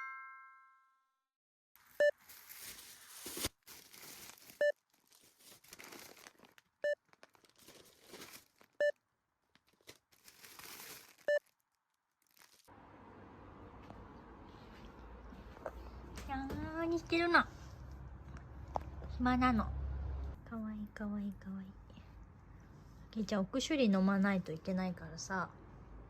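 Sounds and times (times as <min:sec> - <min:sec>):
crinkling and rustling handling: 0:01.8 - 0:12.7.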